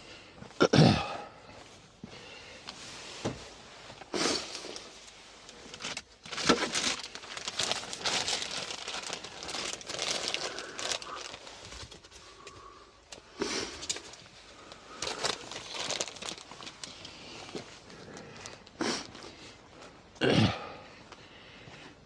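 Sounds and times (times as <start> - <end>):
rustling and scraping gear: 2.7 - 18.8.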